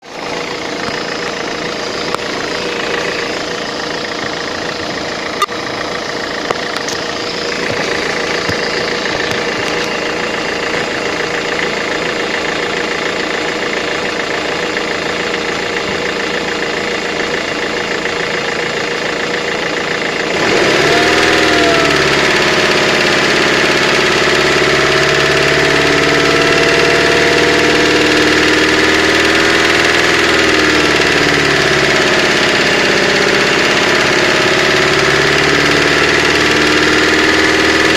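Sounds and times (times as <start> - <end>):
engine idling with rapid knock: 0.0 - 37.9.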